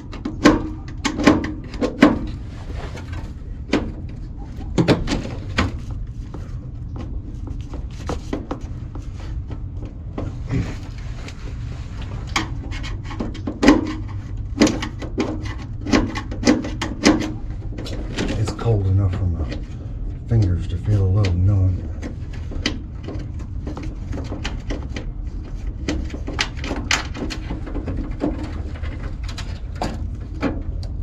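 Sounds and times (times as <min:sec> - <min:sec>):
steady low rumble: 0:00.0 - 0:31.0
clicks taps and knocks of tools: 0:12.3 - 0:18.3.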